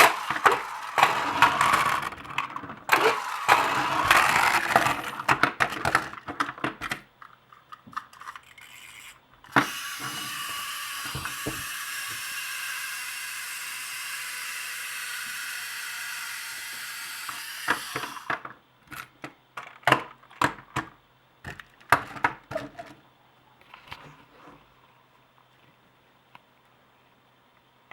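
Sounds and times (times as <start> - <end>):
wind-up toy motor whirring: 0.0 - 5.3, 8.0 - 18.3
toy being handled clicks: 8.0 - 13.1.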